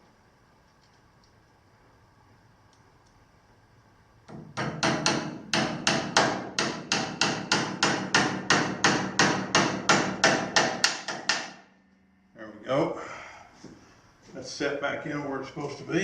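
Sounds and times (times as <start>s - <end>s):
hammer striking metal: 4.3s - 11.8s.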